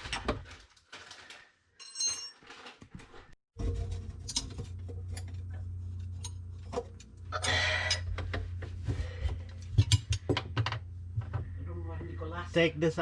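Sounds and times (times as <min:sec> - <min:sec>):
steady low hum: 0:03.6 - 0:13.0.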